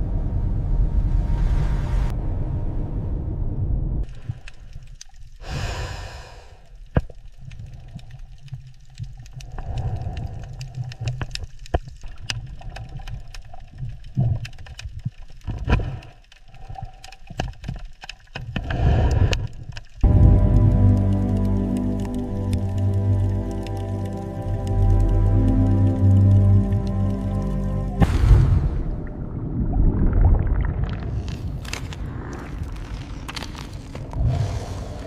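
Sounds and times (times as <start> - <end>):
sharp clicks and crackles: 4.0 - 5.5, 6.7 - 27.7, 30.8 - 35.0
low underwater rumble: 18.6 - 33.2.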